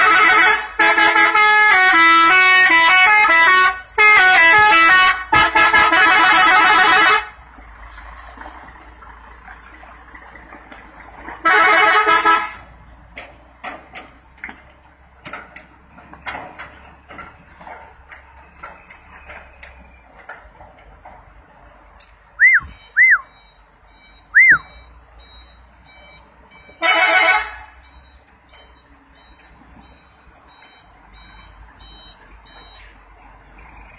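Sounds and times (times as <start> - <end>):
multi-tone air horn blasts: 0.0 - 7.3, 11.4 - 12.6, 26.8 - 27.8.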